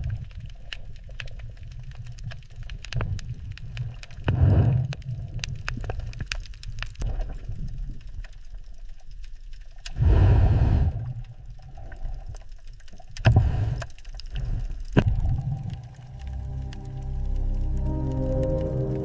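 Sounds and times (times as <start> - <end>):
low rumble: 15.0 - 19.0.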